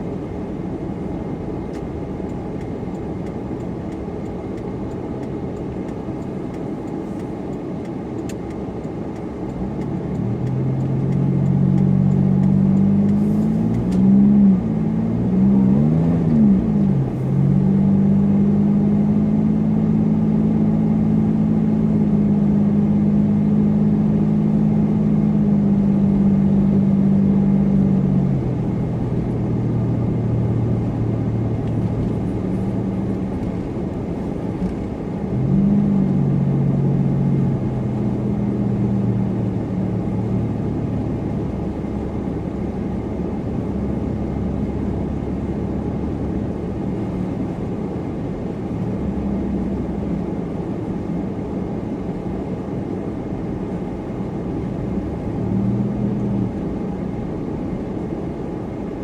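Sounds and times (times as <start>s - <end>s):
low road rumble: 0.0s - 59.0s
car engine revving: 8.2s - 51.6s, 54.8s - 57.3s.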